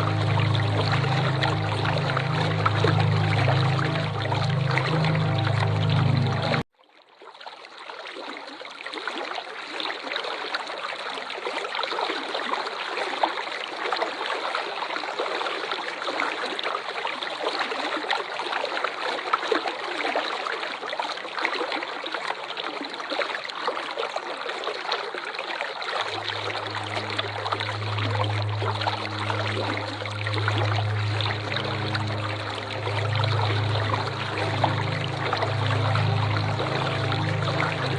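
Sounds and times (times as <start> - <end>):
low steady hum: 0.0 - 6.6, 26.0 - 37.9
waterfall rushing and splashing: 0.0 - 6.6, 26.0 - 37.9.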